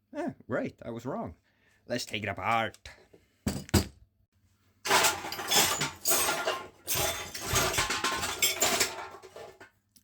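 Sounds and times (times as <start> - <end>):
hard objects clattering on a workbench: 3.4 - 4.0, 4.8 - 9.8.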